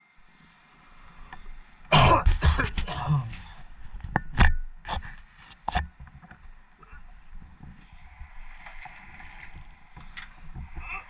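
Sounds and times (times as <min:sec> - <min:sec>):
person coughing hard: 0:01.9 - 0:03.4
person clearing throat: 0:01.9 - 0:03.5.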